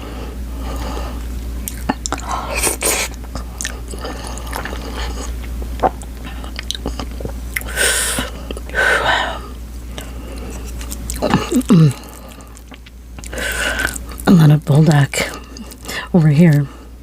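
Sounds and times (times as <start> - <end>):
wet mouth clicks: 1.6 - 7.7
chewing and biting food: 1.6 - 8.8, 9.9 - 14.3, 15.2 - 15.9.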